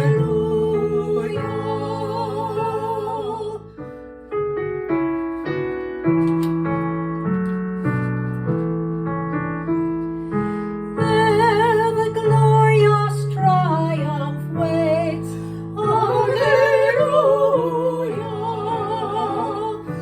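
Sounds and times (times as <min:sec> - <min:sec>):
choir singing: 0:00.0 - 0:03.7, 0:15.8 - 0:20.0.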